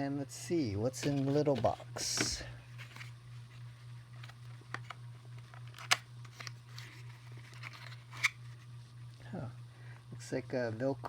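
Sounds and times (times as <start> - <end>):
steady low hum: 0.0 - 11.0
cardboard rustling: 1.0 - 3.6.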